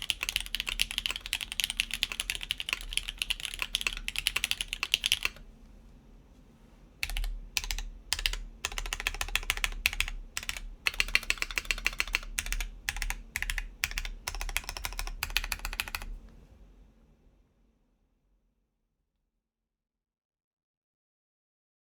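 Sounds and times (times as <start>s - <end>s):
mechanical keyboard typing: 0.0s - 5.4s, 7.0s - 16.2s.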